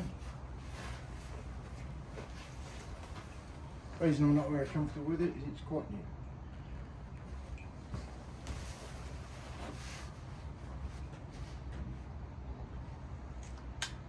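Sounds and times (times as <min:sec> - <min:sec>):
soft rustles: 0:00.0 - 0:05.0, 0:07.3 - 0:12.1.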